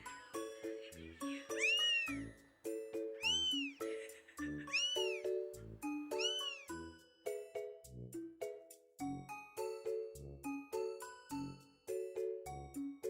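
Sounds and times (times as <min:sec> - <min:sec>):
kitten meowing: 0:01.5 - 0:02.2, 0:03.2 - 0:03.8, 0:04.7 - 0:05.2, 0:06.2 - 0:06.7.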